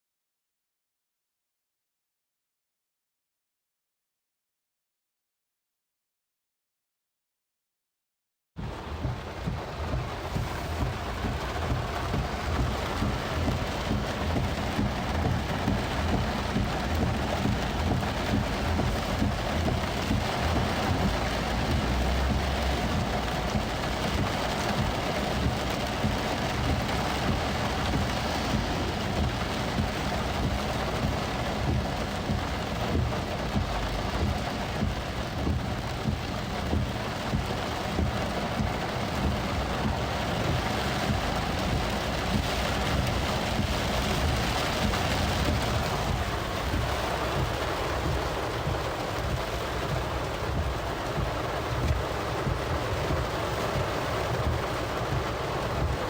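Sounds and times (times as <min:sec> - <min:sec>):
rain drumming on a car roof: 0:08.6 - 0:56.0
windshield wipers sweeping: 0:08.6 - 0:56.0.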